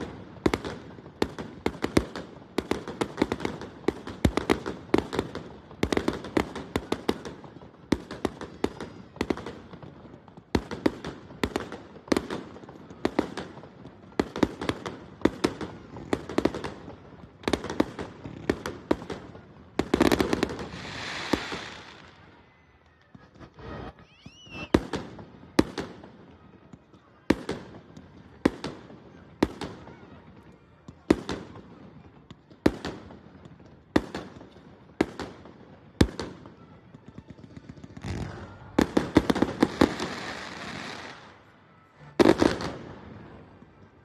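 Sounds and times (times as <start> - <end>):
crackling firework bursts: 0.0 - 44.0
firework whistle: 23.2 - 25.0
fireworks banging: 37.6 - 44.0.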